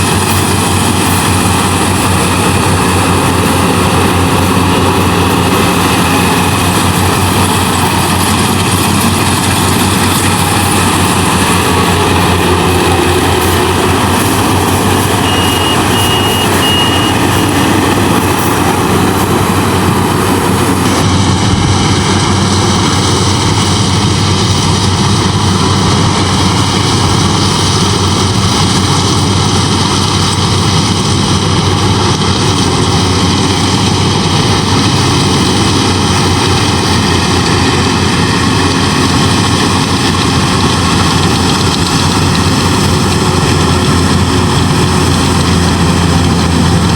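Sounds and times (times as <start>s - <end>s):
combine harvester running: 0.0s - 46.9s.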